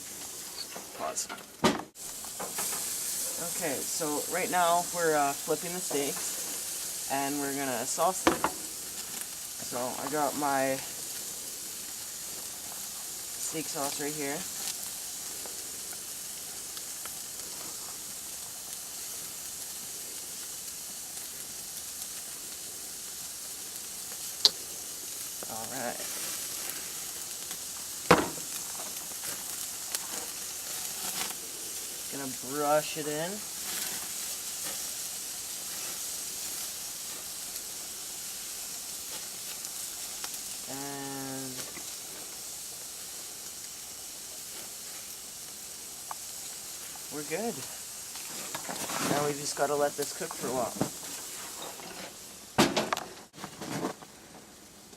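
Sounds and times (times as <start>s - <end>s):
steaks sizzling on a grill: 0.0s - 54.9s
faint crackling ticks: 23.7s - 25.8s, 39.1s - 40.6s, 44.5s - 48.6s.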